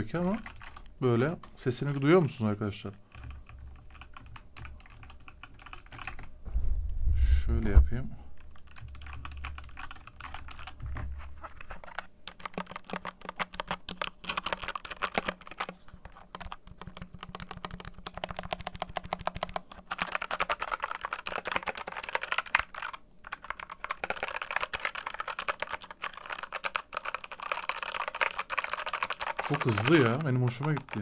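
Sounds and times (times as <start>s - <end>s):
mechanical keyboard key clacks: 12.3s - 15.7s, 16.3s - 31.0s.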